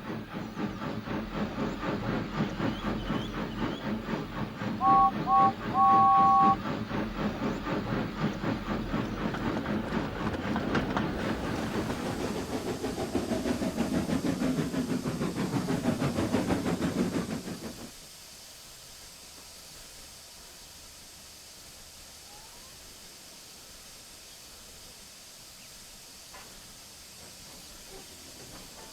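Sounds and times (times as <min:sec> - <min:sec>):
steam locomotive chuffing: 0:00.0 - 0:19.2, 0:22.8 - 0:28.9
faint steady hiss: 0:17.8 - 0:28.9.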